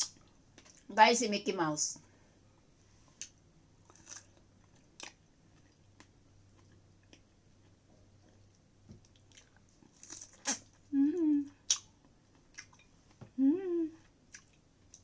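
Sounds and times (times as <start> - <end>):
person chewing strawberries: 3.2 - 13.2, 14.0 - 15.0.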